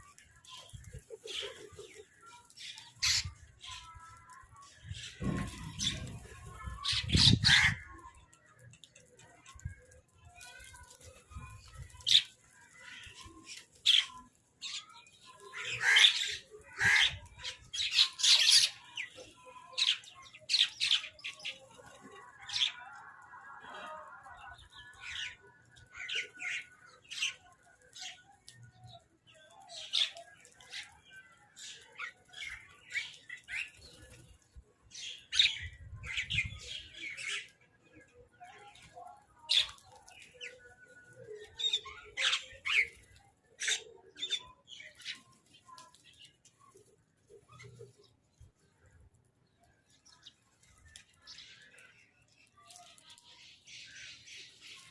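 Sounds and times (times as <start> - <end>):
crows squawking: 7.4 - 7.8, 15.6 - 17.2.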